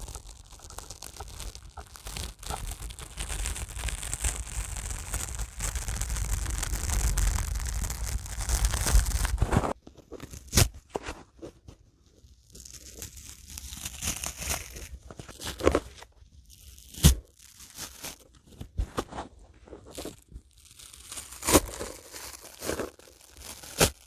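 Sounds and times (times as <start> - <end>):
sponge rustling: 0.0 - 9.8
sponge crackling and tearing: 0.0 - 11.2, 12.1 - 24.0.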